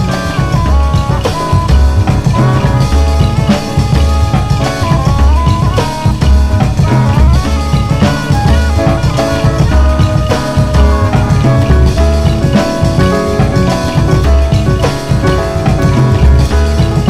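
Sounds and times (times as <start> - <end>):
rock music: 0.0 - 17.0.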